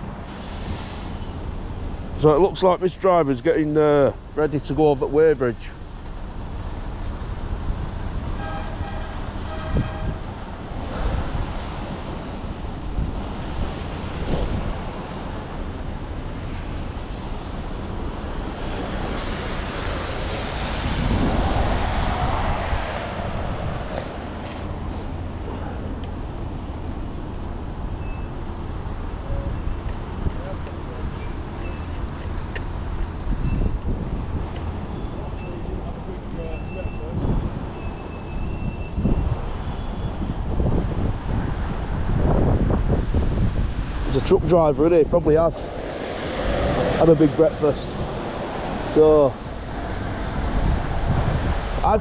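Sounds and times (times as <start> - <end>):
lorries moving: 0.0 - 42.1, 42.7 - 52.0
traffic rumble: 0.0 - 52.0
wind buffeting microphone: 6.9 - 27.8, 28.8 - 52.0.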